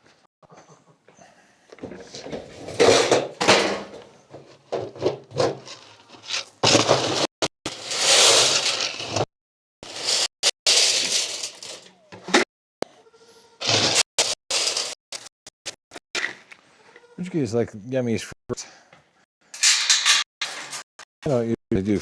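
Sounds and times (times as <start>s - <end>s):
loud scraping and clattering: 2.0s - 12.5s, 13.6s - 16.0s, 19.6s - 21.1s.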